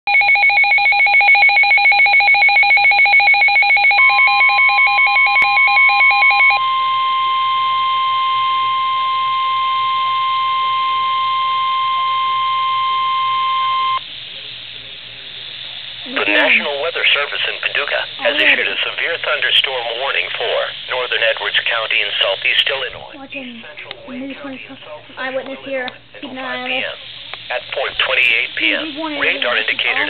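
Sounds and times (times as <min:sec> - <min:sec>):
warbling two-tone beeping: 0:00.1 - 0:14.0, 0:16.1 - 0:17.2
steady alarm tone: 0:00.1 - 0:30.0.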